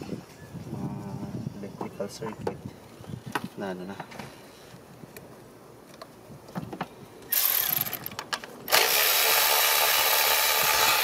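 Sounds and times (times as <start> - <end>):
power tool rasping: 8.7 - 11.0.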